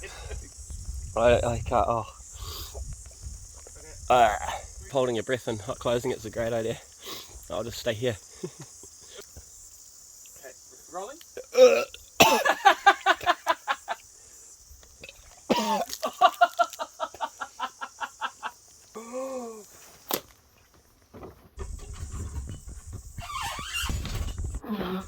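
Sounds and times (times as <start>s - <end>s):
person breathing in quick bursts: 2.3s - 2.8s, 7.0s - 7.4s
person groaning: 19.0s - 19.7s.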